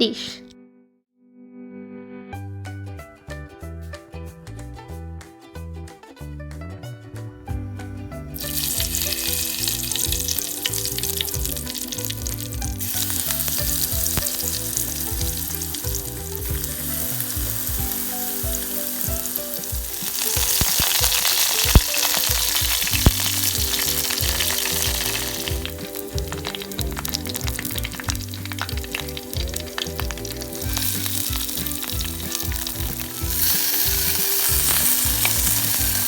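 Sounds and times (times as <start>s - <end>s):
soft background music: 6.8s - 36.0s
food sizzling in oil: 8.4s - 36.0s
stirring in pan: 8.4s - 36.0s.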